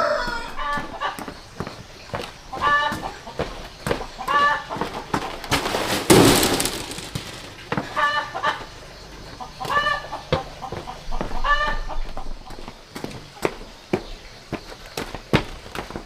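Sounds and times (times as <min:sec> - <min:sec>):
chickens clucking: 0:00.0 - 0:15.0
loud burst of noise: 0:06.0 - 0:07.6.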